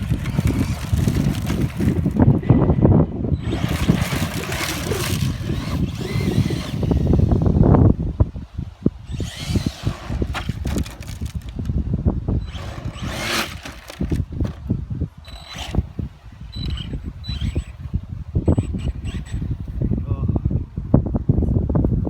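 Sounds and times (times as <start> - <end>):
toy truck motor whirring: 0.0 - 2.4, 3.4 - 7.8, 9.0 - 11.7, 12.4 - 14.6, 15.2 - 19.8
wind buffeting microphone: 0.0 - 22.0.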